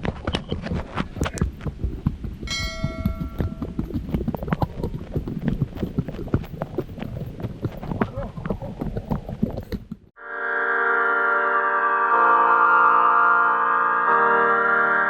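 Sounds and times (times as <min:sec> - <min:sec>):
footsteps on muddy trail: 0:00.0 - 0:10.1
bell-like chime: 0:02.5 - 0:03.4.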